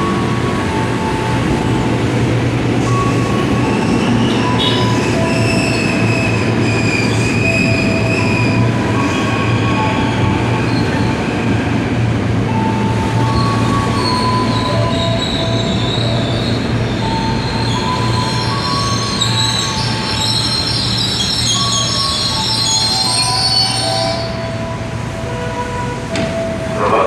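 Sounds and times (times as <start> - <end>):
train rumble: 0.0 - 27.0
train wheels squealing: 2.8 - 11.4, 12.8 - 24.6.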